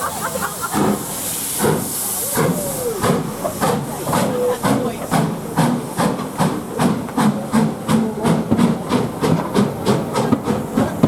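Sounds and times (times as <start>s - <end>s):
steam locomotive chuffing: 0.0s - 11.0s.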